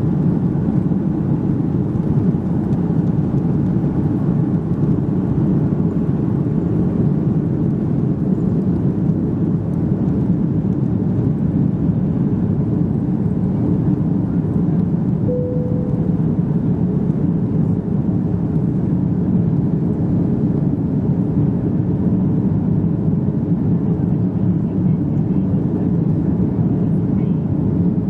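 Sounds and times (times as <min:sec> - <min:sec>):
jet engine cabin rumble: 0:00.0 - 0:28.0.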